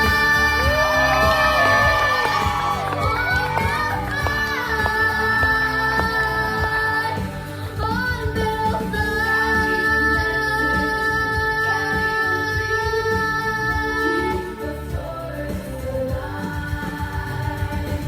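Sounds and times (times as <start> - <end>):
students singing: 0.0 - 12.4, 13.1 - 18.0.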